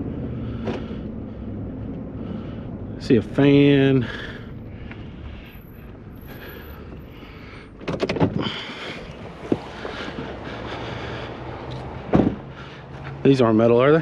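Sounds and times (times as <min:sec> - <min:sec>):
vehicle low rumble: 0:00.0 - 0:14.0.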